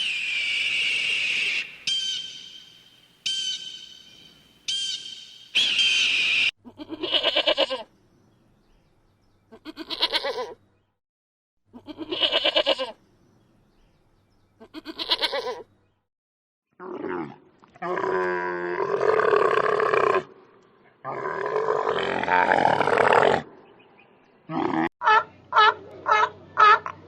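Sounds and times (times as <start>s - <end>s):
high-pitched whistling call: 0.0s - 6.5s
goat bleating: 6.6s - 7.9s, 9.5s - 10.6s, 11.7s - 13.0s, 14.6s - 15.7s.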